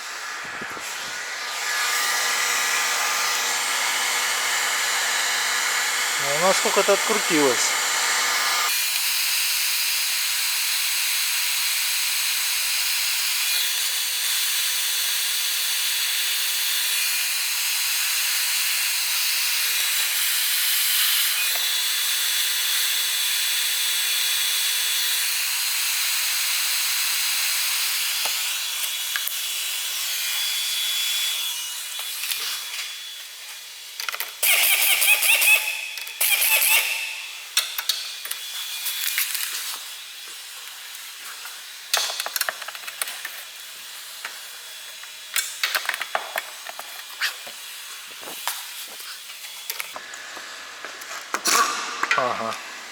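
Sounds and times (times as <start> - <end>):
heating tool hissing: 0.0 - 3.4, 5.9 - 8.8.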